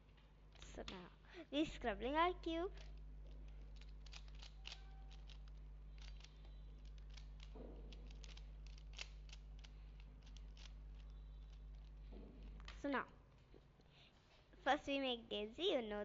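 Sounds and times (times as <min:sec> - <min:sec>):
faint electrical hum: 0:00.0 - 0:16.0
puzzle cube clicking: 0:02.8 - 0:11.9.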